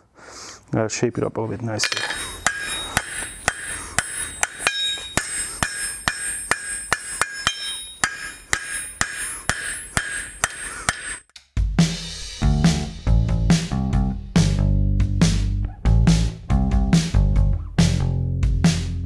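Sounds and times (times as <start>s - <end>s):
hammer striking steel on anvil: 1.8s - 11.2s.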